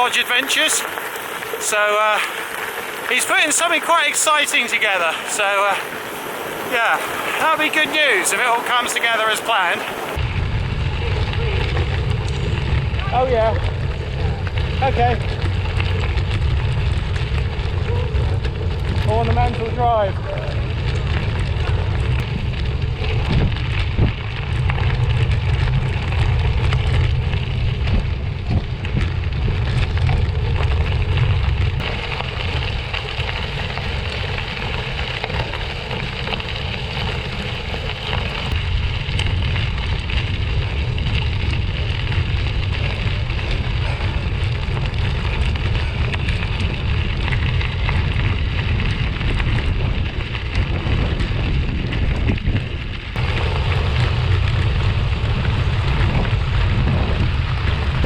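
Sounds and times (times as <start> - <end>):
bicycle tyres rolling on gravel: 0.0 - 58.0
wind buffeting microphone: 0.0 - 58.0.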